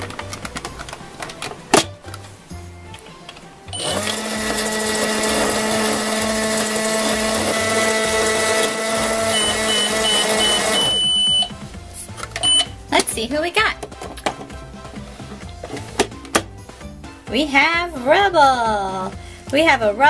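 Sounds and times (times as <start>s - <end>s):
toy microwave humming: 3.7s - 11.6s
short beeps: 9.3s - 11.5s, 12.4s - 12.7s.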